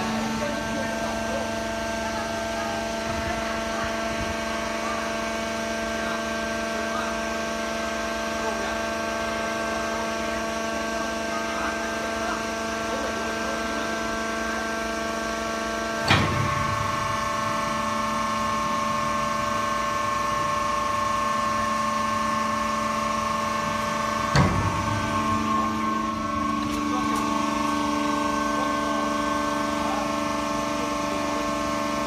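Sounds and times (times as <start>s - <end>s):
hydraulic power unit humming: 0.0s - 32.0s
sharp machine clunk: 16.0s - 21.3s, 22.3s - 30.5s.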